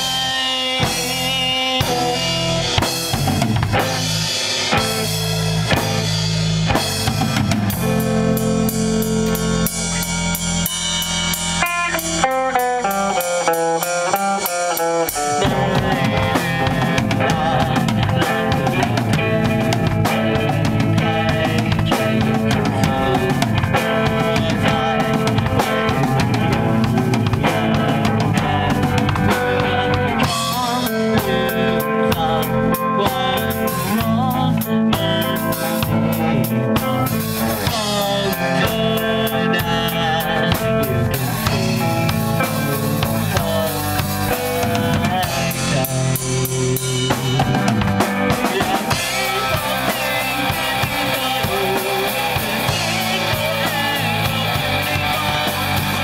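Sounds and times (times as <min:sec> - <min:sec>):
drum kit: 0:00.0 - 0:56.0
rock band music: 0:00.0 - 0:56.0.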